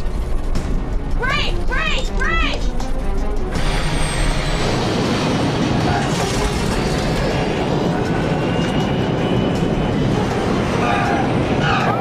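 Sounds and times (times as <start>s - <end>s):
wheels rumbling on runway: 3.1s - 12.0s
jet engines roaring: 3.5s - 12.0s.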